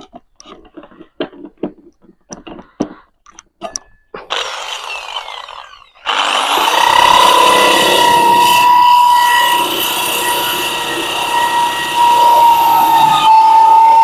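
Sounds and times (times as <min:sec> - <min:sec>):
knocks and clicks of handling: 0:00.0 - 0:04.3
electric drill whine: 0:04.3 - 0:14.0.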